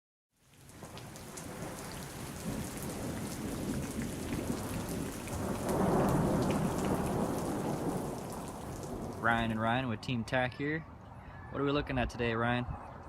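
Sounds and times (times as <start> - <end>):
heavy rain falling: 0.4 - 9.8
low rumble of thunder: 0.7 - 9.9.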